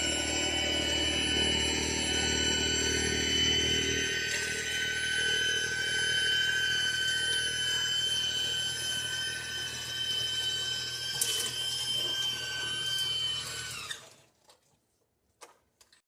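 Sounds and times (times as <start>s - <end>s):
electric snowblower motor whine: 0.0s - 14.0s.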